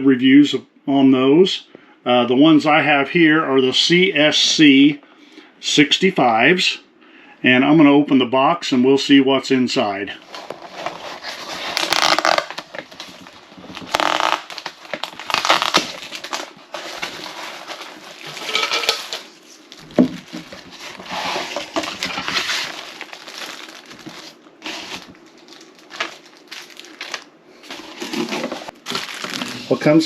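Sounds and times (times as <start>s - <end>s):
cardboard packaging rustling: 10.2s - 30.0s.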